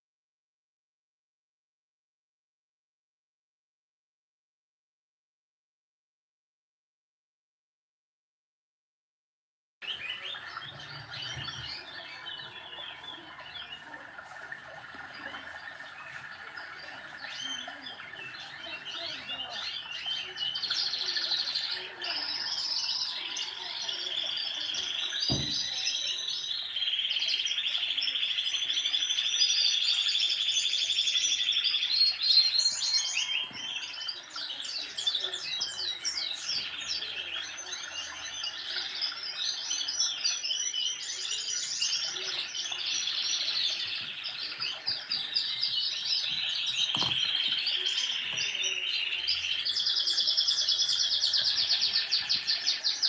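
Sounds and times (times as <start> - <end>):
birds chirping and trilling: 9.8 - 53.0
low thump: 25.3 - 25.6.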